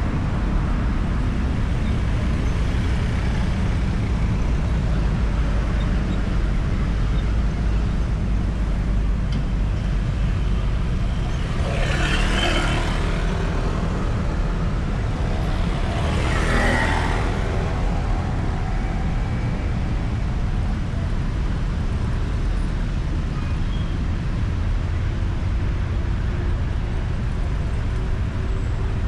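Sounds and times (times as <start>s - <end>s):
highway traffic rumble: 0.0s - 29.0s
vehicle passing close by: 11.2s - 21.0s.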